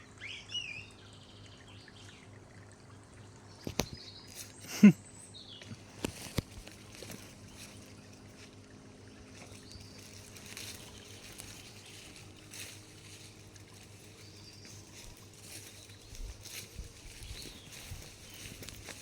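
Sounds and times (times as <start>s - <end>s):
steady low hum: 0.0s - 19.0s
rustle: 9.3s - 19.0s.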